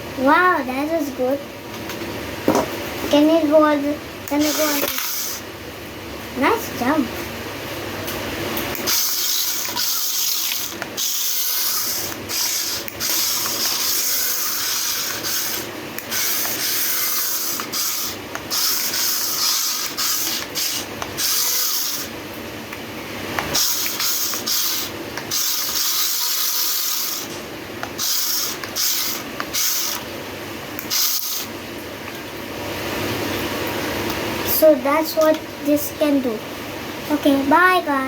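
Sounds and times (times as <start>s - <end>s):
toy car electric motors whirring: 4.3s - 5.4s, 8.7s - 22.1s, 23.4s - 30.1s, 30.8s - 31.5s
wheels rubbing on surface: 8.9s - 22.1s.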